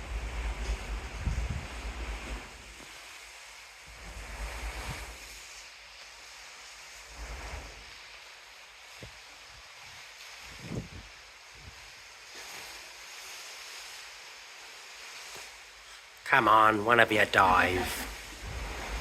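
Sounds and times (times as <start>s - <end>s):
wind buffeting microphone: 0.0s - 2.6s, 10.4s - 11.9s, 17.8s - 19.0s
hiss of sea wash: 0.0s - 19.0s.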